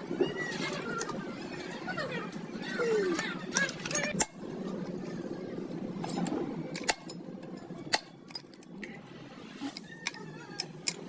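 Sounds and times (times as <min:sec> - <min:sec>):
low steady background noise: 0:00.0 - 0:11.0
metal tools clinking: 0:03.6 - 0:04.3.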